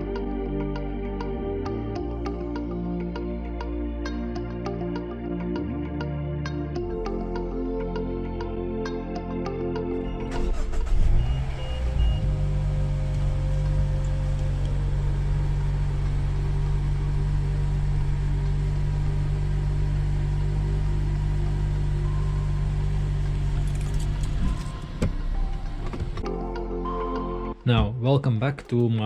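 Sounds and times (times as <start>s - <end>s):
car engine starting and idling: 10.0s - 27.6s.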